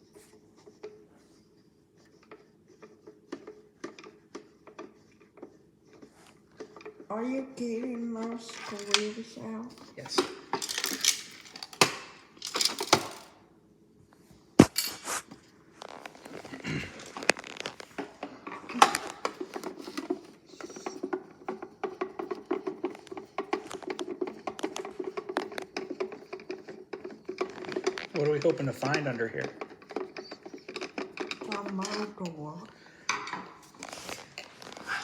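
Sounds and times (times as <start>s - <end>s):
small rattles: 2.2s - 13.4s, 15.8s - 35.0s
screwdriver scraping plastic: 15.0s - 32.3s.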